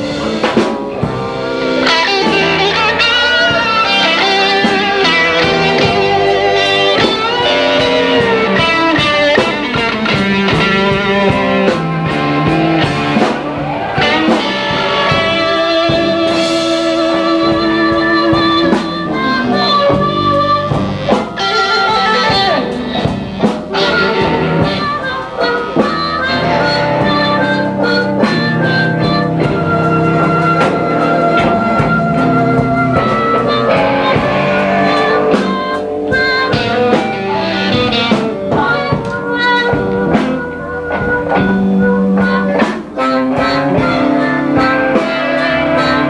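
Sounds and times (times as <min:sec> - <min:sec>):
blues band playing live: 0:00.0 - 0:46.0
drums: 0:00.0 - 0:46.0
electric guitar: 0:00.0 - 0:46.0.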